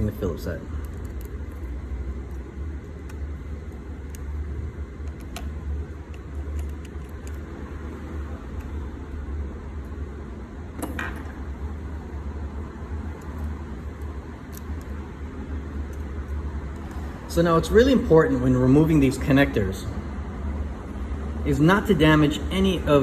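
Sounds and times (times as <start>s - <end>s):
low background hum: 0.0s - 23.0s
screws and screwdriver clicking: 5.0s - 7.5s.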